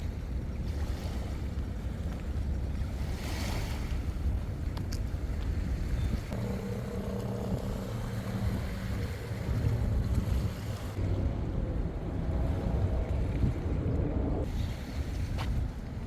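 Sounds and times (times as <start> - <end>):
wind buffeting microphone: 0.0 - 16.0
steady mechanical drone: 6.3 - 14.5.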